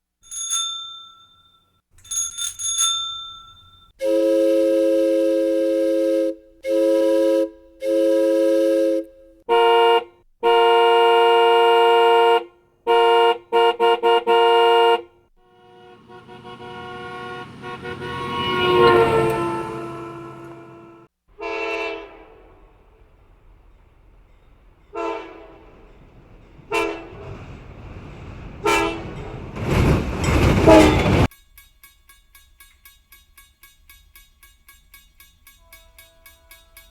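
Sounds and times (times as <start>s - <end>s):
bell rings: 0.2s - 3.9s
horn toots: 4.0s - 22.8s, 26.7s - 27.4s, 28.6s - 31.3s
chord horn blasts: 4.0s - 22.9s, 24.9s - 25.6s
horn of passing vehicle: 4.0s - 23.0s, 24.9s - 25.6s, 26.7s - 27.4s, 28.6s - 29.3s, 30.6s - 31.3s.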